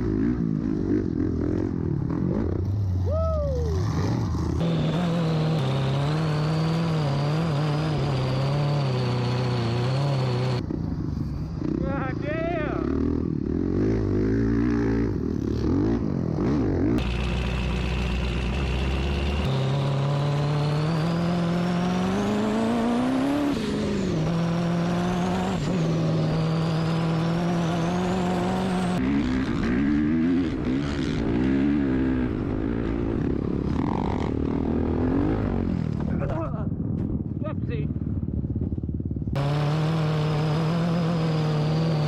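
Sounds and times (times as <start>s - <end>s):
vehicle engine revving: 3.7s - 10.7s, 12.7s - 36.4s, 39.3s - 42.0s.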